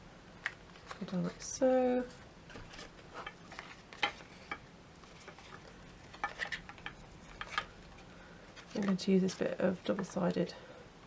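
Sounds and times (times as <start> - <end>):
cardstock crinkling and tapping: 2.1 - 8.0, 8.6 - 10.3.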